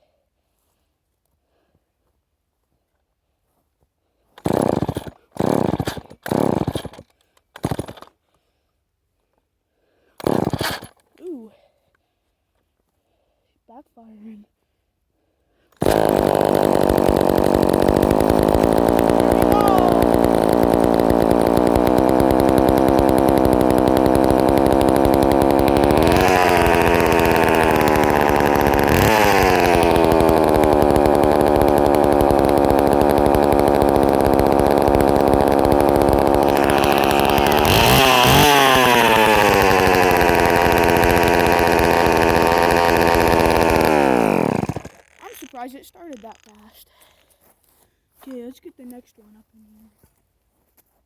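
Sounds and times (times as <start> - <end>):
chainsaw revving: 4.4 - 8.2, 10.2 - 11.4, 15.7 - 46.8.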